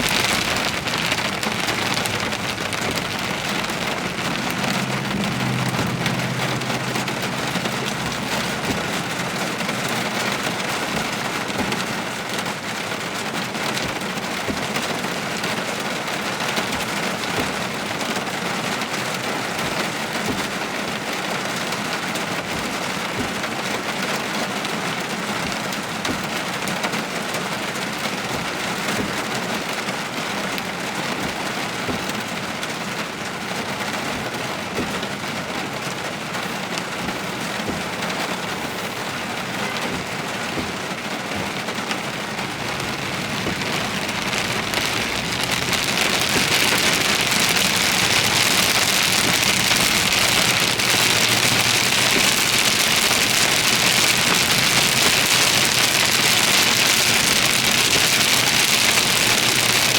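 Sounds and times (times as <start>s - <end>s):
low hum: 0.0s - 10.8s
heavy rain pouring: 0.0s - 59.9s.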